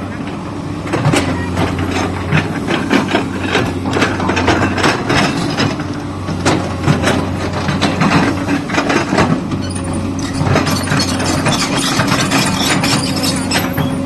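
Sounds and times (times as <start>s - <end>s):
excavator diesel engine running: 0.0s - 14.0s
excavator knocking and clattering: 0.0s - 14.0s.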